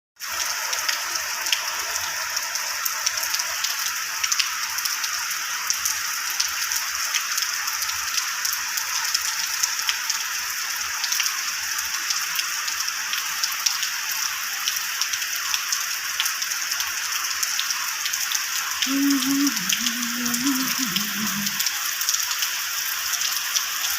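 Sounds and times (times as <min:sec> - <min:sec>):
heavy rain hissing: 0:18.8 - 0:21.7.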